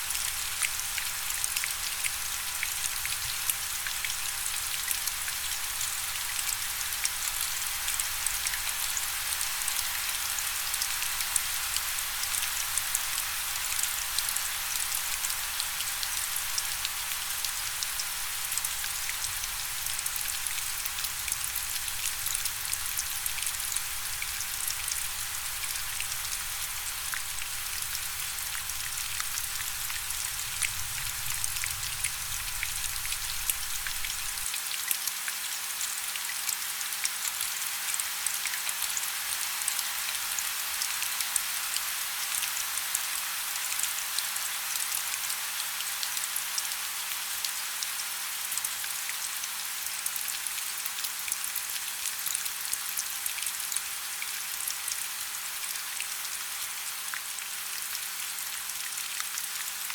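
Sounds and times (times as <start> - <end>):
steady rain falling: 0.0 - 34.6.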